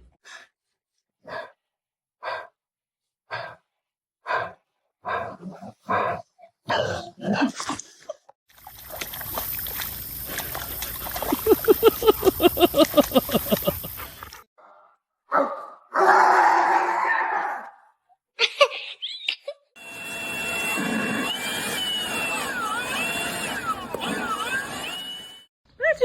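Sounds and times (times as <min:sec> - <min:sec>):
dog barking: 0:01.2 - 0:01.6, 0:14.7 - 0:16.4
fast huffing breaths: 0:08.8 - 0:14.5
steady hiss: 0:08.9 - 0:14.4.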